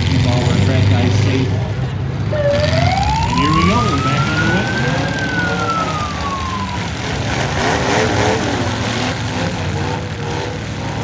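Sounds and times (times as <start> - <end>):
car engines revving: 0.0 - 11.0
siren winding down: 2.3 - 7.6.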